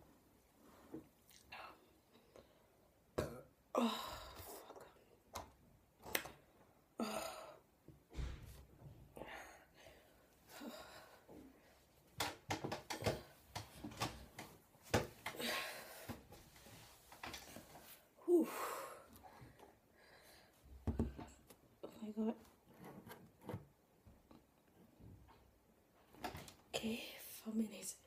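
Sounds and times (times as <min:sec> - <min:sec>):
woman breathing hard: 0:15.3 - 0:16.3.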